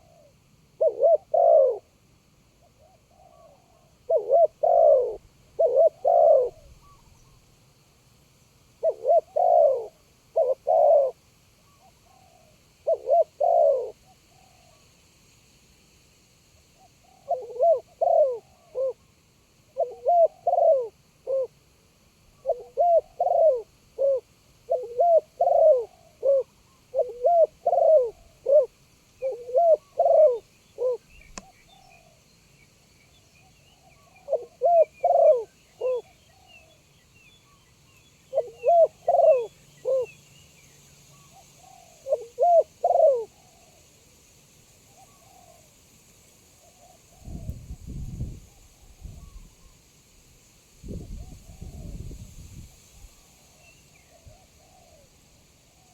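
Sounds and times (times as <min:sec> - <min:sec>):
dove cooing: 0:00.0 - 0:02.0, 0:02.6 - 0:07.4, 0:08.8 - 0:14.8, 0:17.0 - 0:19.0, 0:19.7 - 0:21.6, 0:22.4 - 0:32.2, 0:33.7 - 0:36.7, 0:38.2 - 0:40.2, 0:41.2 - 0:43.9, 0:44.9 - 0:45.7, 0:50.9 - 0:52.2, 0:54.1 - 0:55.9
small birds chirping: 0:27.0 - 0:43.3.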